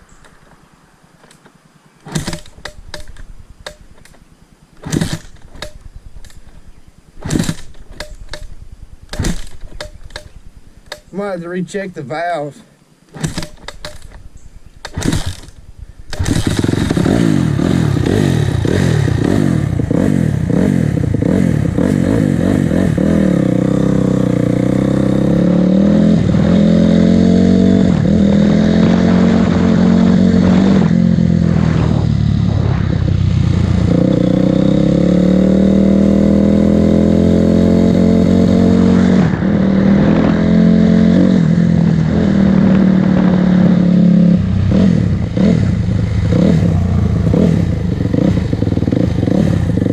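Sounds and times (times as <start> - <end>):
dirt bike engine running: 13.2 - 49.9.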